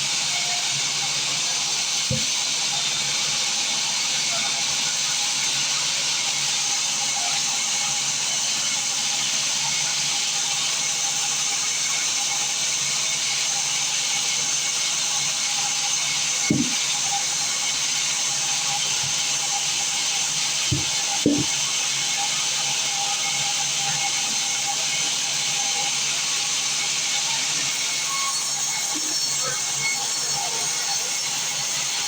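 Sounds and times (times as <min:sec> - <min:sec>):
short knock: 0:16.5 - 0:16.8, 0:20.7 - 0:21.6.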